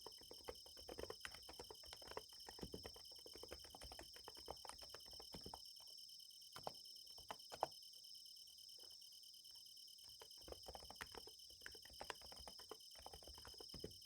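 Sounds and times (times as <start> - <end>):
faint keyboard typing: 0.0 - 5.9, 6.6 - 7.8, 10.1 - 14.0
night insects singing: 0.0 - 14.0.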